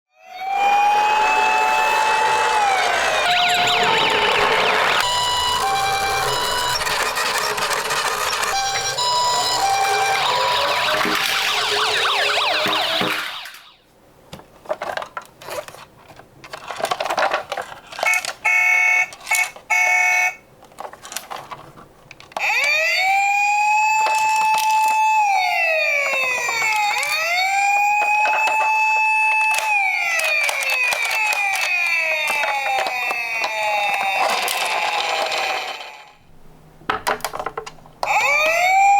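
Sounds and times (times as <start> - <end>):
emergency vehicle siren wailing: 0.1 - 13.9, 22.4 - 36.1, 38.0 - 38.9
overlapping siren wails: 0.1 - 13.9, 22.4 - 35.5, 38.0 - 38.9
pulsed electronic tones: 0.4 - 13.8
toy cars clicking and knocking: 4.4 - 11.8, 14.7 - 19.9, 20.6 - 36.2, 36.9 - 38.7.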